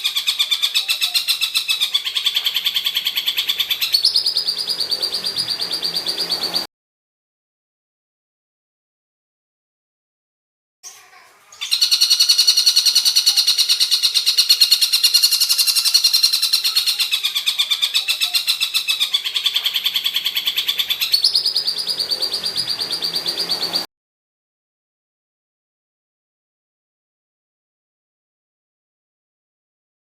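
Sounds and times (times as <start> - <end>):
bird harsh rapid trill: 0.0 - 6.7, 10.9 - 23.9.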